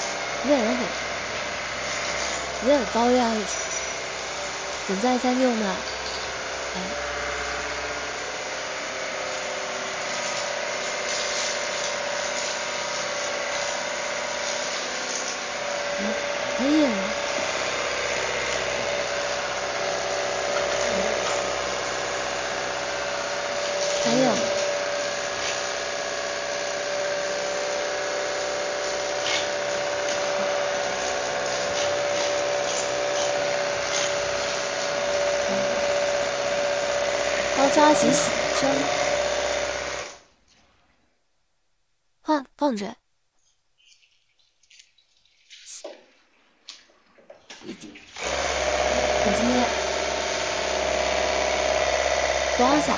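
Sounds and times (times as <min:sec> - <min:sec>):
electric motor whine: 0:00.0 - 0:40.3, 0:48.1 - 0:52.9.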